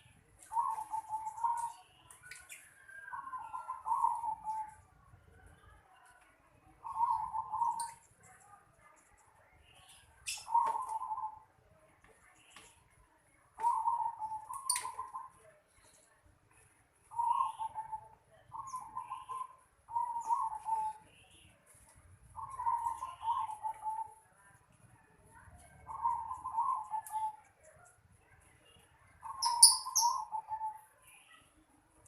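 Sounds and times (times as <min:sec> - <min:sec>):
dove cooing: 0:00.5 - 0:01.8, 0:03.1 - 0:04.7, 0:06.8 - 0:07.9, 0:10.4 - 0:11.4, 0:13.6 - 0:15.3, 0:17.1 - 0:21.0, 0:22.4 - 0:24.2, 0:25.8 - 0:27.4, 0:29.2 - 0:30.8.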